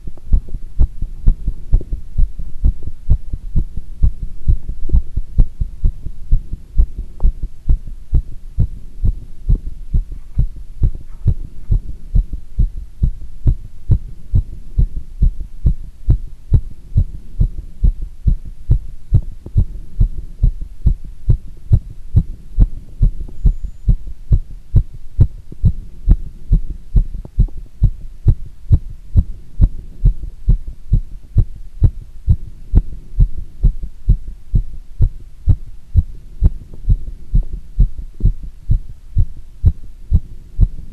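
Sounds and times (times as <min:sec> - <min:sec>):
heartbeat thumps: 0:00.0 - 0:40.9.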